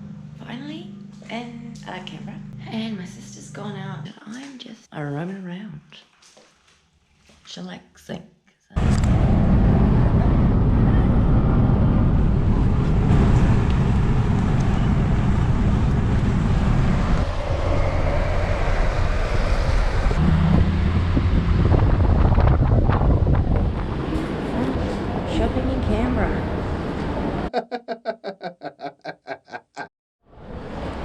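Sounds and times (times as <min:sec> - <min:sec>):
wind buffeting microphone: 0:08.8 - 0:27.5.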